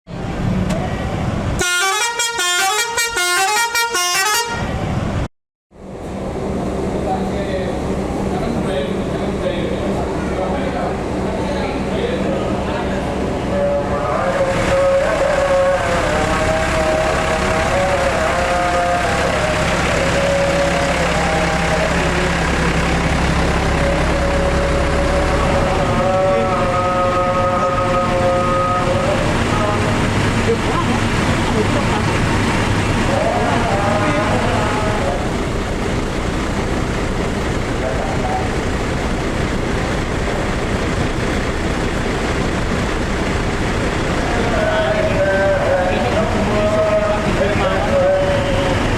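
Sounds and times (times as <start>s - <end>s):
bus diesel engine running: 0.1s - 48.9s
roadside traffic noise: 0.1s - 48.9s
musical horn notes: 1.6s - 4.8s.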